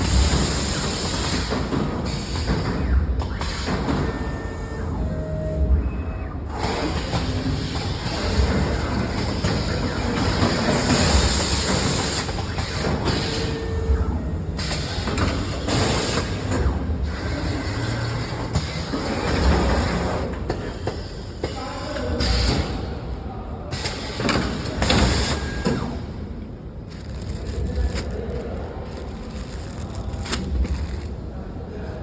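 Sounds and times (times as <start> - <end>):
machine clattering and rumbling: 26.8 - 31.3.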